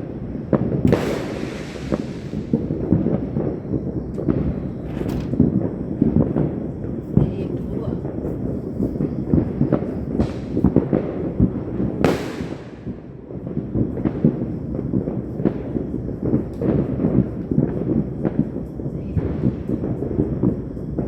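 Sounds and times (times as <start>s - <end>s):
crackling hiss: 0.0s - 21.0s
fireworks and firecrackers popping: 0.0s - 21.0s.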